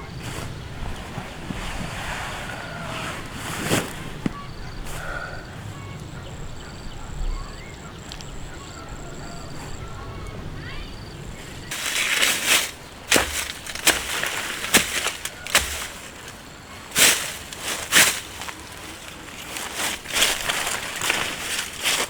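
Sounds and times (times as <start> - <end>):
crunching and rustling: 0.0 - 22.0
sharp snaps and cracks: 11.7 - 22.0.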